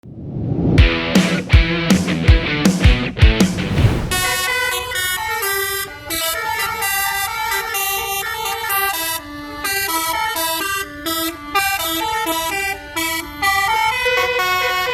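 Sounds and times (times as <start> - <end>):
rock music drum hits: 0.8 - 4.5
bus multi-tone horn tune: 4.4 - 14.9.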